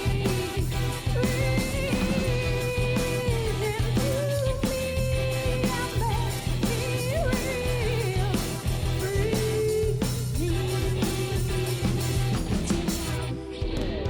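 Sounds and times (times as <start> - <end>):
drums: 0.0 - 14.0
guitar: 0.0 - 14.0.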